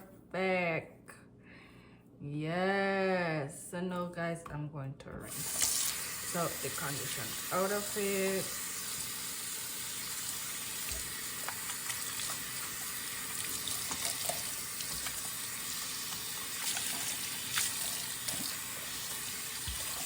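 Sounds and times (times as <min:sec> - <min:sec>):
tap water running: 0:05.2 - 0:20.0
small water splashes: 0:10.8 - 0:20.0.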